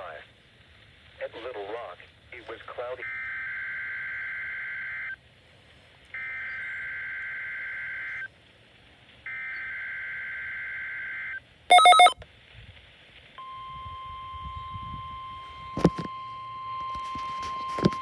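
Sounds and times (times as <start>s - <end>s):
shrill warbling data bursts: 11.7s - 12.1s.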